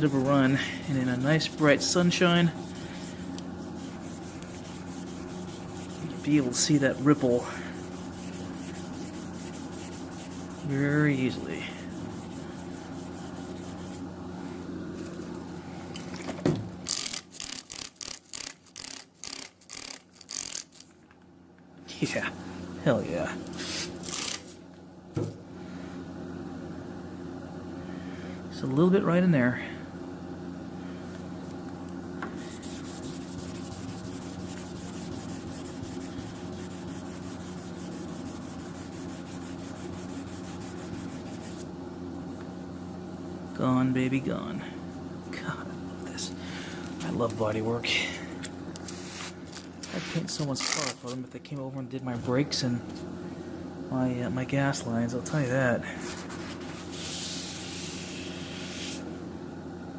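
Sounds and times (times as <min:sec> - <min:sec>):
sandpaper wet sanding strokes: 0:00.0 - 0:14.1, 0:32.4 - 0:43.3, 0:56.0 - 0:59.1
steady low hum: 0:00.0 - 0:59.9.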